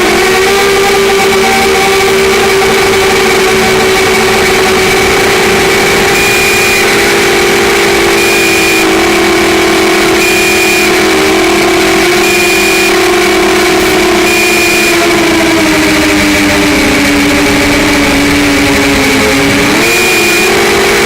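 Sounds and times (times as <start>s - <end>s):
quadcopter motors whining: 0.0s - 21.0s
short high beep: 4.5s - 15.5s.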